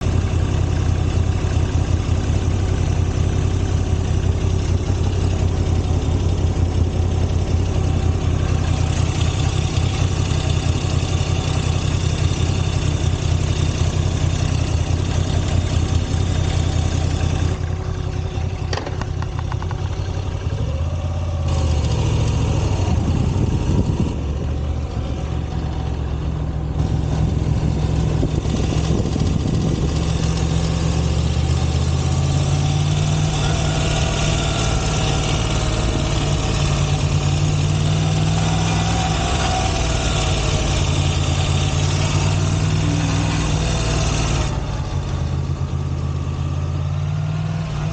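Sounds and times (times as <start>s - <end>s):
motorcycle engine idling: 0.0s - 47.0s
loose exhaust cover rattling: 14.6s - 20.6s.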